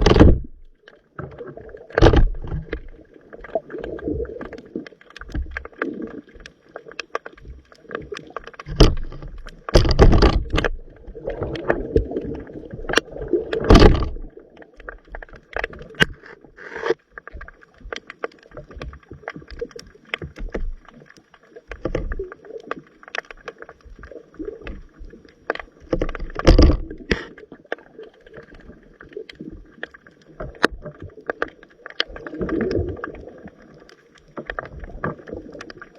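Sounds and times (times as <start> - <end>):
clicks and knocks: 0.0 - 0.7, 1.9 - 2.9, 8.6 - 10.8, 12.9 - 14.2, 25.9 - 27.3
underwater gurgling and sloshing: 0.0 - 35.9.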